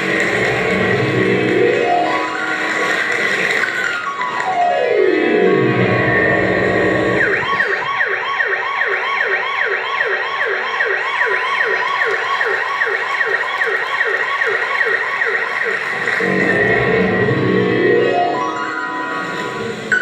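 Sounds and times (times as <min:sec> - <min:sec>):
falling electronic glide: 0:00.0 - 0:07.6, 0:15.9 - 0:20.0
wailing siren ringtone: 0:00.0 - 0:20.0.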